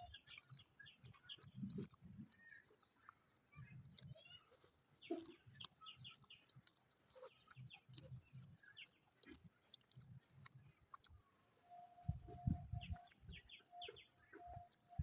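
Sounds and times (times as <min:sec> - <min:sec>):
faint close-up chewing: 0:00.0 - 0:15.0
small birds chirping: 0:00.0 - 0:15.0.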